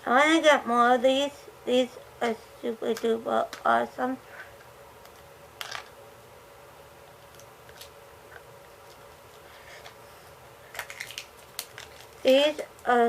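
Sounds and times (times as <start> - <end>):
faint steady hum: 0.0 - 13.0
plastic packaging rustling: 10.6 - 12.4.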